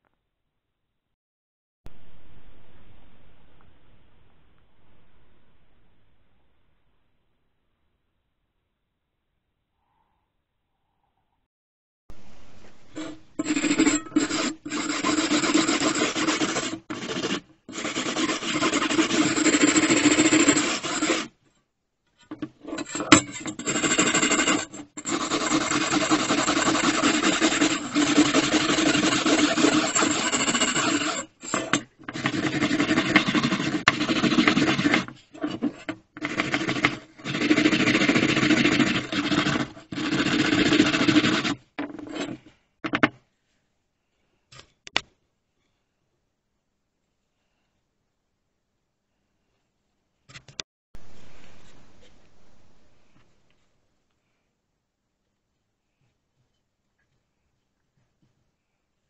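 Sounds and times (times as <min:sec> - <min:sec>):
filing on metal: 0:12.8 - 0:21.4, 0:22.4 - 0:42.4.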